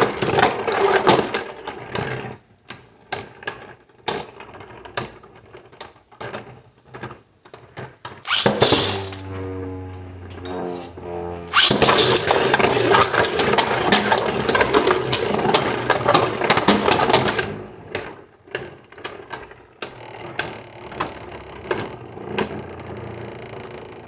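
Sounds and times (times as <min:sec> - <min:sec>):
spinning tops clashing and scraping: 0:08.3 - 0:09.2.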